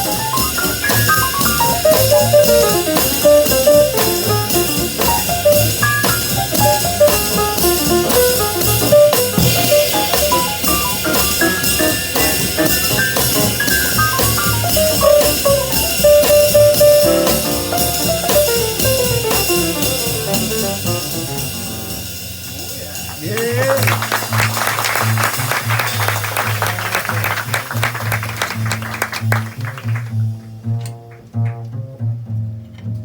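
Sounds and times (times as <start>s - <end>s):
fast melodic solo: 0.0s - 22.1s
horn: 0.0s - 22.4s
drum kit beat: 0.0s - 31.6s.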